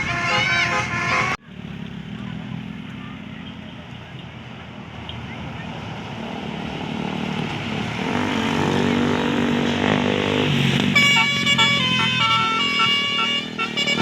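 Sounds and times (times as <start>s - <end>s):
multi-tone horn melody: 0.0s - 1.4s, 9.9s - 14.0s
bus engine: 0.0s - 14.0s.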